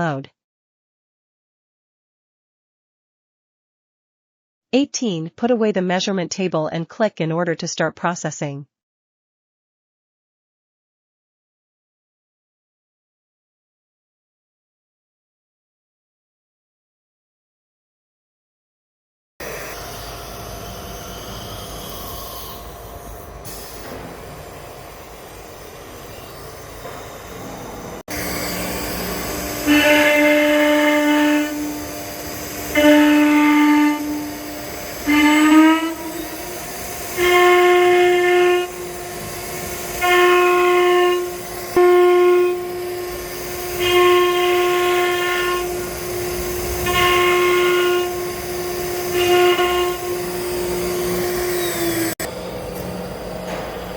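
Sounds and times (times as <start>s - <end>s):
cnc router whine: 19.4s - 53.9s
machine hum: 19.4s - 53.9s.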